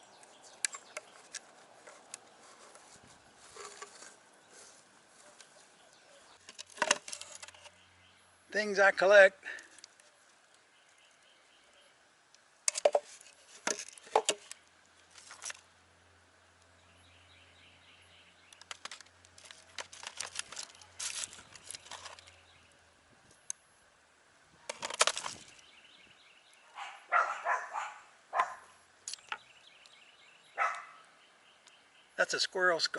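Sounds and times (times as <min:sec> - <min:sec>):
small hard objects clicking: 0:18.5 - 0:22.3, 0:24.7 - 0:25.6, 0:29.0 - 0:29.4.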